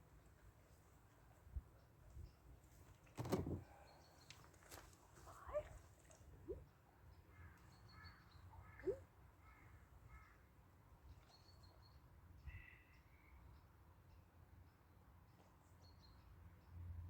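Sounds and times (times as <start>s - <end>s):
faint crow cawing: 7.3s - 10.5s.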